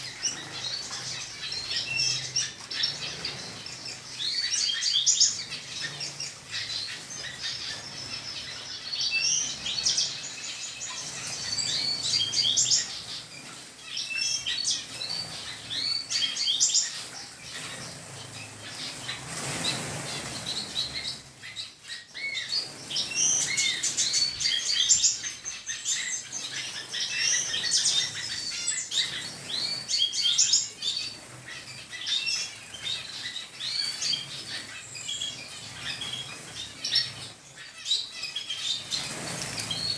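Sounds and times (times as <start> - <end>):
small birds chirping and trilling: 0.0 - 39.9
wings fluttering: 38.6 - 39.9.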